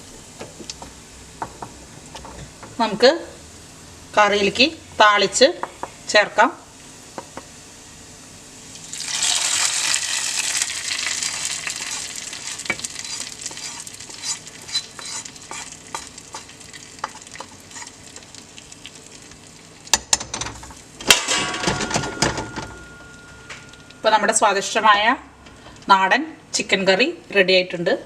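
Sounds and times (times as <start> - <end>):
hot oil sizzling: 0.0 - 21.1.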